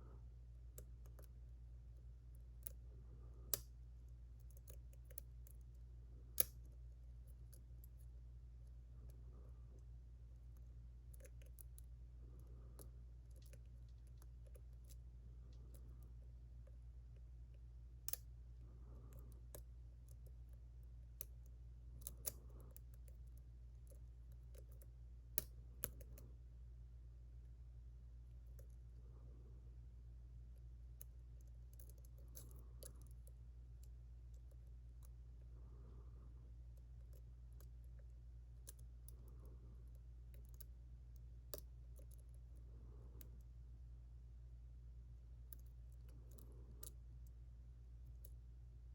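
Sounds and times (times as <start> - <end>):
low steady hum: 0.0 - 48.9
lock pick clicking and ticking: 6.4 - 6.8.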